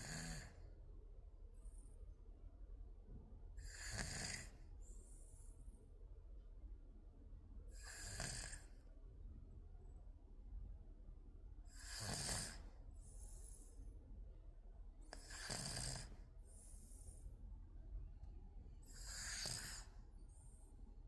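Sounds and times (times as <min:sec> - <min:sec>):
baby snoring: 0:00.0 - 0:00.6, 0:03.6 - 0:04.6, 0:07.8 - 0:08.8, 0:11.7 - 0:12.7, 0:15.2 - 0:16.2, 0:18.9 - 0:20.0
soft airy breath: 0:00.0 - 0:00.8, 0:01.5 - 0:02.2, 0:03.6 - 0:06.1, 0:11.7 - 0:14.3, 0:15.0 - 0:18.0, 0:18.8 - 0:21.0.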